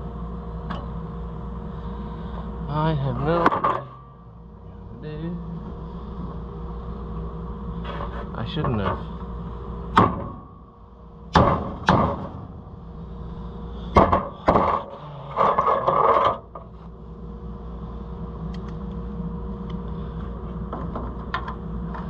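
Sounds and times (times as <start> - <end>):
hammer striking steel punch: 10.0 - 10.4, 11.3 - 12.3.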